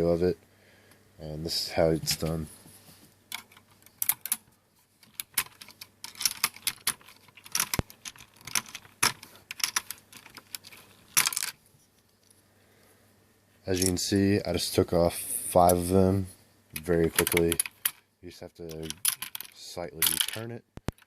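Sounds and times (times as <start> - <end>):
plastic keycaps clicking and clacking: 5.0 - 11.5.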